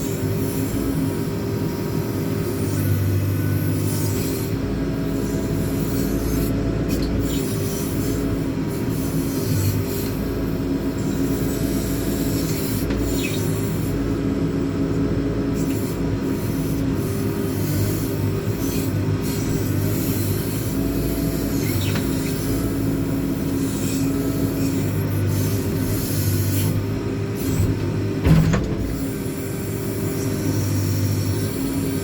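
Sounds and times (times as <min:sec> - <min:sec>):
diesel engine running: 0:00.0 - 0:32.0
digging gear squeaking and scraping: 0:06.9 - 0:08.0, 0:12.3 - 0:13.8, 0:18.4 - 0:26.8.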